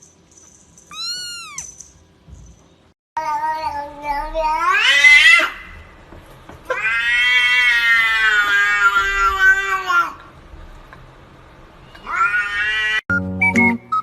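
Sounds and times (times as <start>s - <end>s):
cat yowling: 0.9s - 1.8s, 6.7s - 10.2s, 12.0s - 13.0s.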